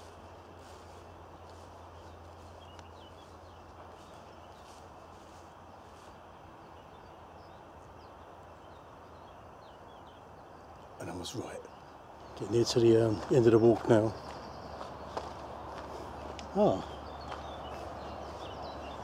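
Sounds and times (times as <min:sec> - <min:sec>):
footsteps on a path: 0:00.0 - 0:07.1, 0:12.1 - 0:19.0
faint birds chirping: 0:00.0 - 0:19.0.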